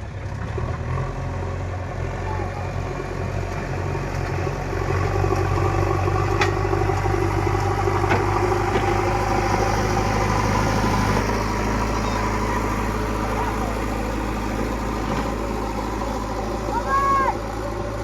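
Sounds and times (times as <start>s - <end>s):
diesel engine running: 0.0s - 18.0s.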